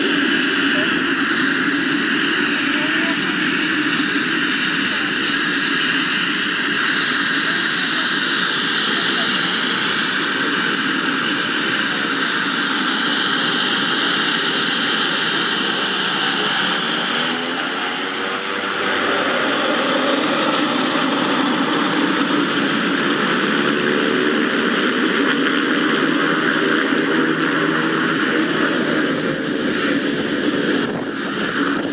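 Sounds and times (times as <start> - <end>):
turboprop engine running: 0.0 - 31.9.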